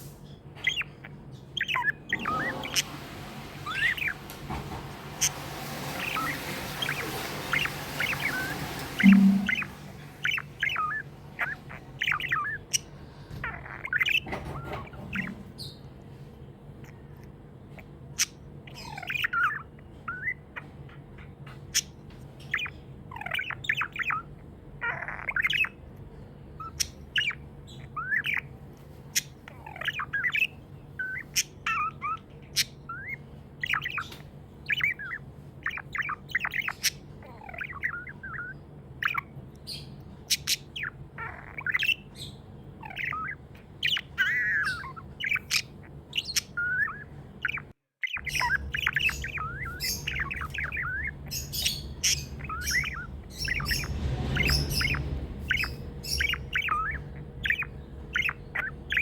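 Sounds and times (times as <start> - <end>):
budgerigars chirping and chattering: 0.0 - 16.2, 16.8 - 59.0.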